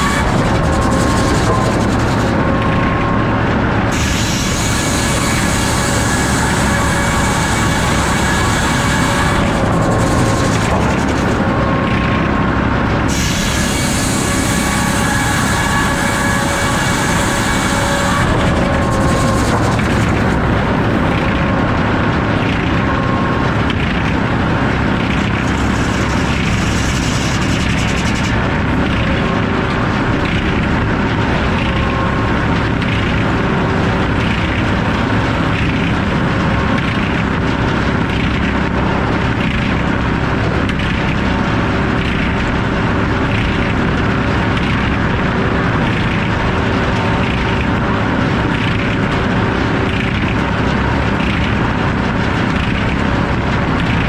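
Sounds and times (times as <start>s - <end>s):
saw cutting log hiss: 0.0s - 2.4s, 3.9s - 11.6s, 13.1s - 20.4s
sawmill saw running: 0.0s - 54.0s.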